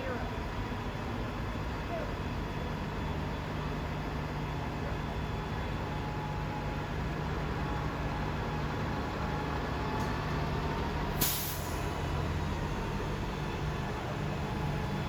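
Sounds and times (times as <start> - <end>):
bus engine running: 0.0 - 15.0
air brakes hissing: 11.2 - 12.0.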